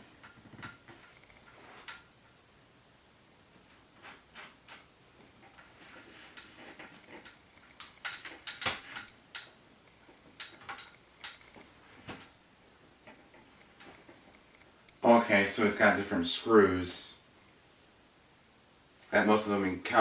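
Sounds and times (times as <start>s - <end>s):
metal parts clicking and tapping: 0.0s - 2.4s, 3.7s - 12.4s.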